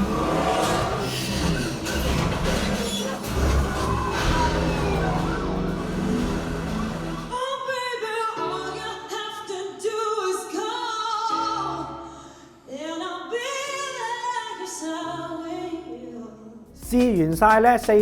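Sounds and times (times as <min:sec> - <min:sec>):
dense noisy passage: 0:00.0 - 0:07.4
person singing: 0:16.8 - 0:18.0.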